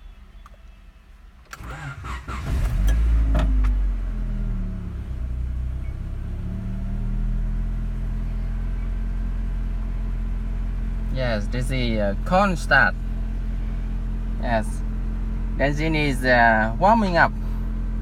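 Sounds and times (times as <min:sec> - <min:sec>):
engine starter cranking: 0:01.4 - 0:03.7
car engine revving then idling: 0:01.6 - 0:18.0.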